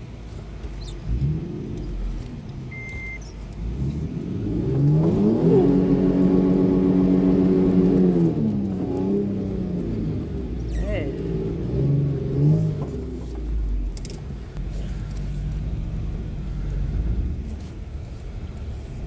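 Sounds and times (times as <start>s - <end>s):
car engine revving: 0.3s - 19.0s
short electronic beep: 2.7s - 3.3s.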